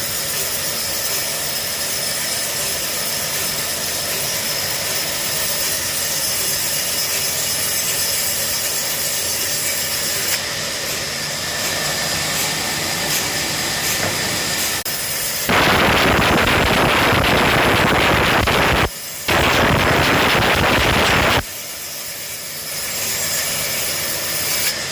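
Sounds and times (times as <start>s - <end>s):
woodworking machinery hissing: 0.0s - 24.9s
loud rushing noise: 15.5s - 21.5s.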